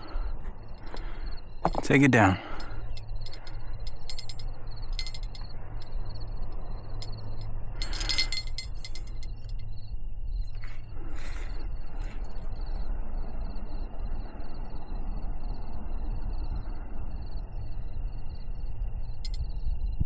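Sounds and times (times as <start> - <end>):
crickets chirping: 0.0 - 20.0
steady low rumble: 0.0 - 20.0
light clinks: 0.6 - 9.8, 19.2 - 19.5
rustle: 10.4 - 12.9.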